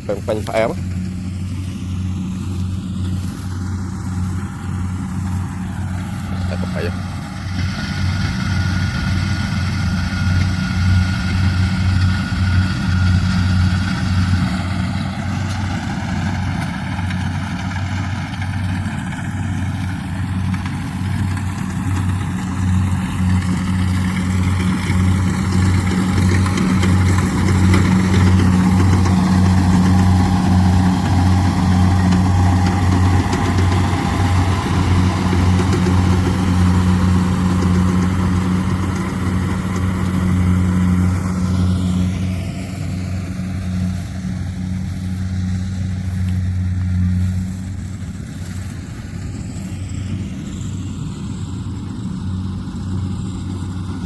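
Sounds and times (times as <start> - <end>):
combine harvester diesel engine: 0.0 - 54.0
high whine: 19.6 - 54.0.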